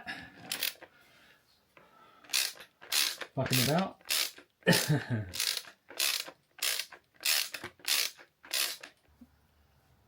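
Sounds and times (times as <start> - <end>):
ratchet wrench clicking: 0.5 - 0.8, 2.3 - 4.5, 5.3 - 9.0.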